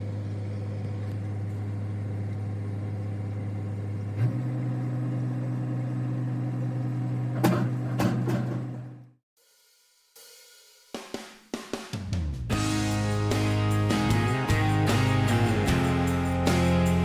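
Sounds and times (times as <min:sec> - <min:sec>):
diesel engine droning: 0:00.0 - 0:07.5, 0:12.6 - 0:17.0.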